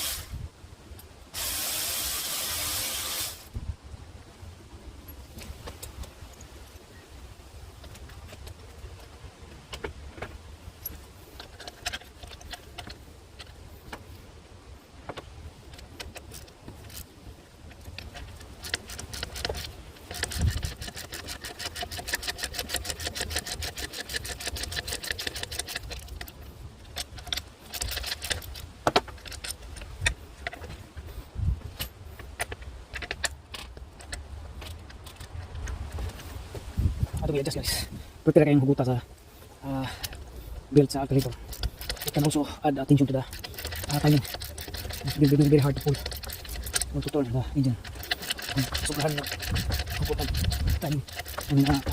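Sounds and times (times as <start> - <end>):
ratchet wrench clicking: 17.7 - 30.2, 41.1 - 42.4, 43.0 - 51.9.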